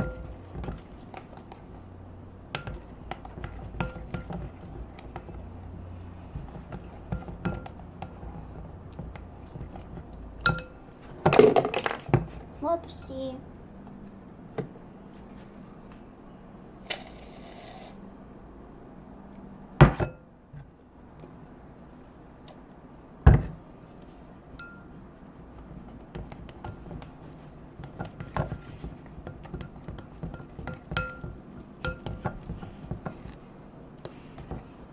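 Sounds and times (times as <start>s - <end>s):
fork clinking against a bowl: 10.4s - 10.8s, 29.5s - 32.4s.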